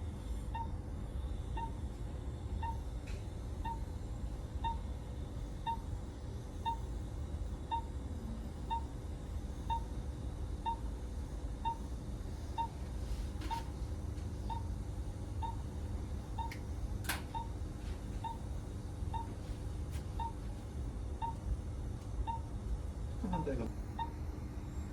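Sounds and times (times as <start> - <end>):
low equipment hum: 0.0 - 24.9
patient monitor beeping: 0.4 - 0.8, 1.4 - 1.9, 2.5 - 2.9, 3.5 - 7.0, 7.7 - 8.9, 9.5 - 9.9, 10.6 - 12.8, 13.5 - 13.8, 14.4 - 21.6, 22.2 - 22.6, 23.2 - 24.3.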